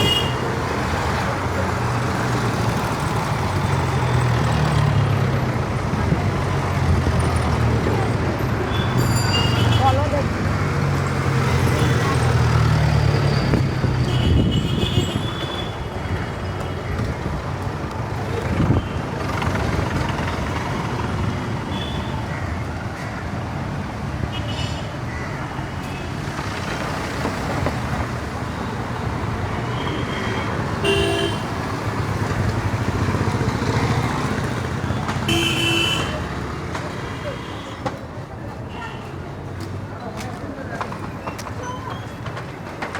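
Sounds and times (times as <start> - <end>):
vehicle horns tooting: 0.0 - 0.6, 8.7 - 10.1, 13.3 - 15.9, 29.7 - 31.8, 34.9 - 36.3
traffic engines rumbling: 0.0 - 42.9
faint crowd voices: 36.1 - 42.9.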